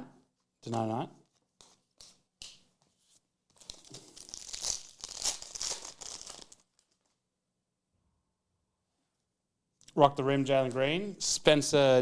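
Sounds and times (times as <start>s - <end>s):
card pack wrapper tearing and crinkling: 3.6s - 7.0s.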